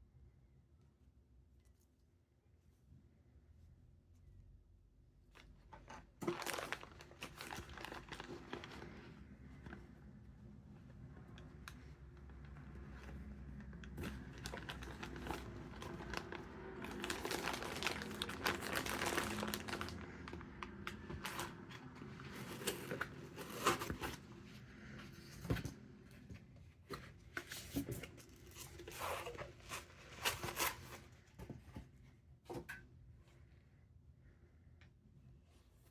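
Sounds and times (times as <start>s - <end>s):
packaging crinkling and rustling: 5.7s - 10.2s, 11.0s - 25.8s, 26.9s - 31.4s.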